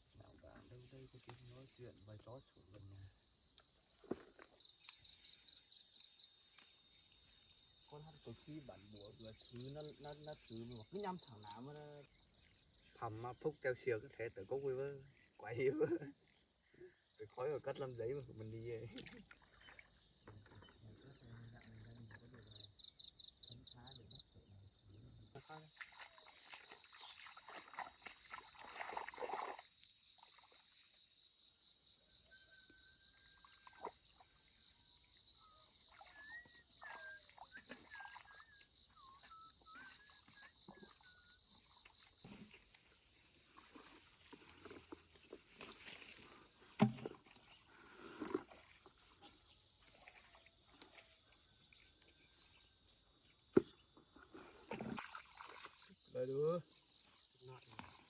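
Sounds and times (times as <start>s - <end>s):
insects chirring: 0.0s - 58.0s
whistled bird notes: 35.4s - 41.6s.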